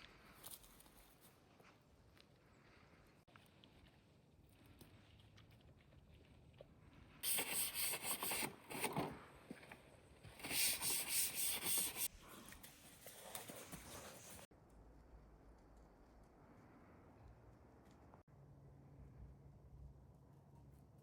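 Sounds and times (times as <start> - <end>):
rough rubbing strokes: 10.4 - 14.5.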